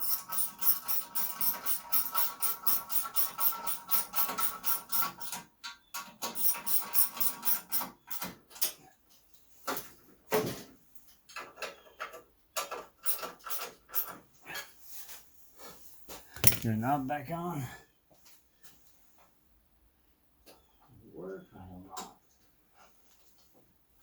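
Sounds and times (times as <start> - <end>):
socket ratchet clicking: 16.4 - 16.7.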